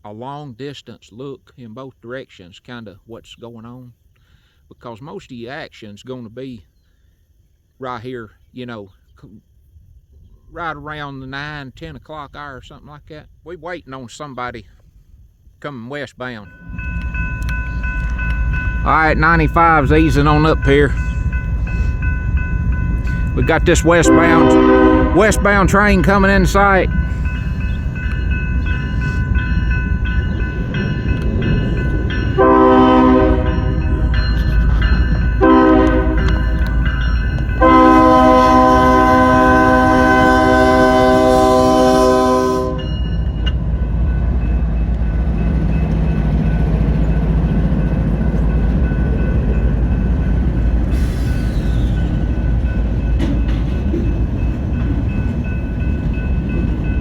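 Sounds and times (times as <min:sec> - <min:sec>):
train rumbling: 0:16.2 - 0:57.0
locomotive air horn blasts: 0:23.8 - 0:26.8, 0:32.4 - 0:34.0, 0:35.4 - 0:36.6, 0:37.6 - 0:43.0.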